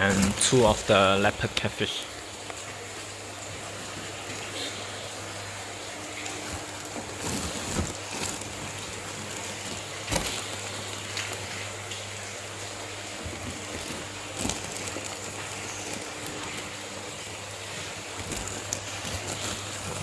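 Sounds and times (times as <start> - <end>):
aquarium pump hum: 0.0 - 20.0
running water hiss: 0.0 - 20.0.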